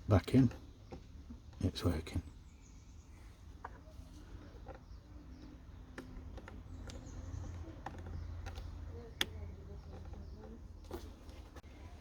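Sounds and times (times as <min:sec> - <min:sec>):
small plastic clicks and taps: 0:04.4 - 0:11.6.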